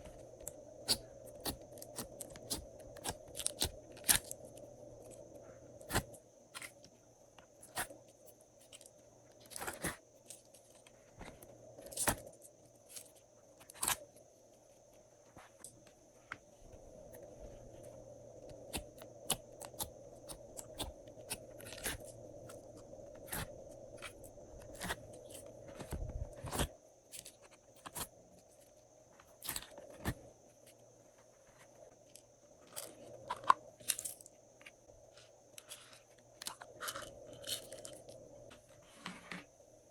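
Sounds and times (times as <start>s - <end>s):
faint steady hum: 0.0s - 39.9s
sticky clicks and crunchy pops: 0.3s - 5.2s, 18.4s - 28.1s.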